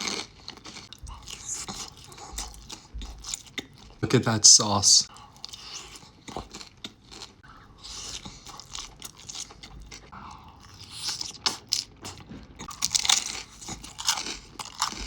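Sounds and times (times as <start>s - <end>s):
chewing and crunching food: 0.0s - 15.0s.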